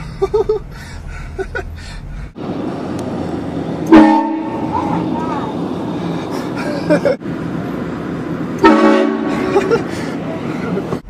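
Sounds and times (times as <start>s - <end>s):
road and engine noise: 0.0s - 11.0s
train horn blast: 3.9s - 4.8s, 8.6s - 9.6s.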